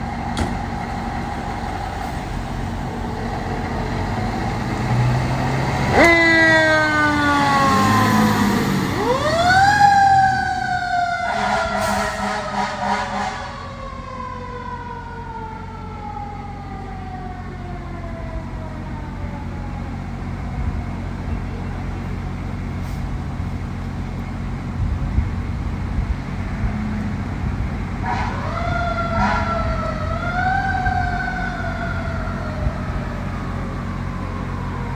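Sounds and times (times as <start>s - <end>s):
fire engine engine noise: 0.0s - 34.9s
fire engine siren: 0.0s - 34.9s
road rumble: 0.0s - 34.9s.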